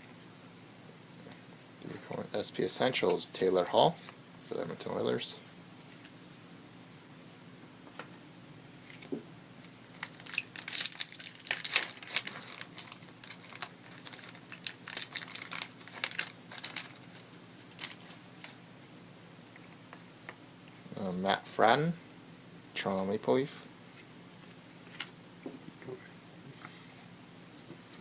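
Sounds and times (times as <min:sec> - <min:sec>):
foil wrapper crinkling and tearing: 0:09.9 - 0:18.6.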